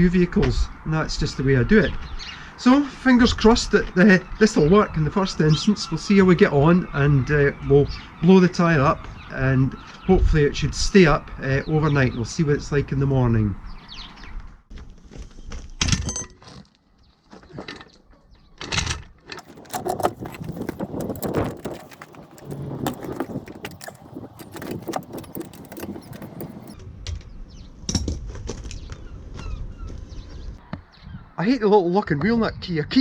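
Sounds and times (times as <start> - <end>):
metal tools clinking: 19.3 - 26.8.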